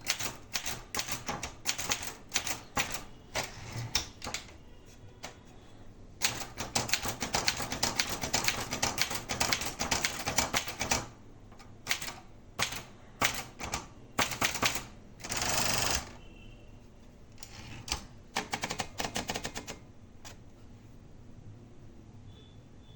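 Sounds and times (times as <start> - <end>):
typewriter key strikes: 0.0 - 4.5, 6.2 - 16.1
typewriter rasping sweep: 0.0 - 4.6.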